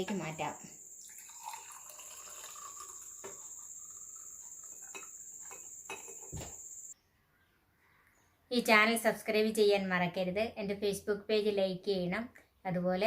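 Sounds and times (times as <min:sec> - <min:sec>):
liquid trickling into glass: 0:00.5 - 0:06.2.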